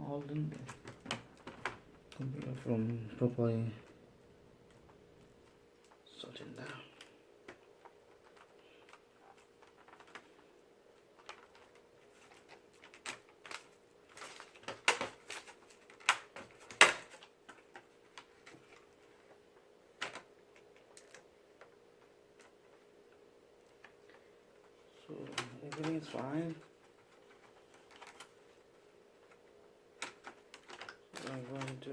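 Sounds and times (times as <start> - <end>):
sharp plastic snaps: 11.2 - 18.3.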